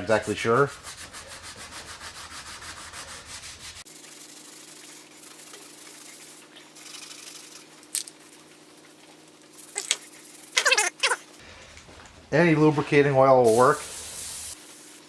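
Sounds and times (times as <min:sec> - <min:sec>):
abrasive pad scrubbing cast iron: 0:00.0 - 0:06.6.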